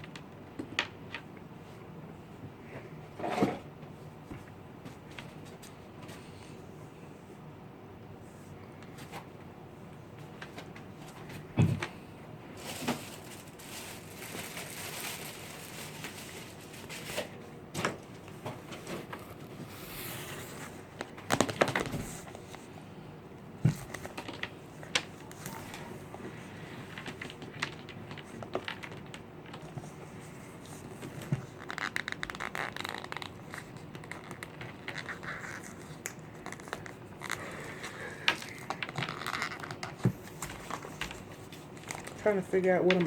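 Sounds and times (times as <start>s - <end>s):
soft crinkling and crunching: 8.3s - 22.8s, 23.4s - 43.0s.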